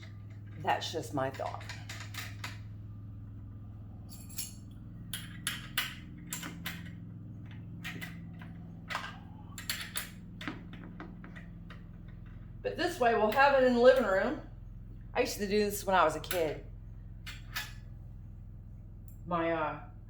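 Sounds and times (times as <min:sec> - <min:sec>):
steady low hum: 0:00.0 - 0:20.0
metal hardware clicking and clinking: 0:01.2 - 0:02.7, 0:04.1 - 0:12.5, 0:17.2 - 0:17.9.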